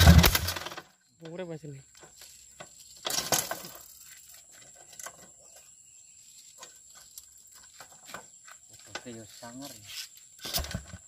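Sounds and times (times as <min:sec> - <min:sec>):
rustling scrape: 0:09.3 - 0:10.6.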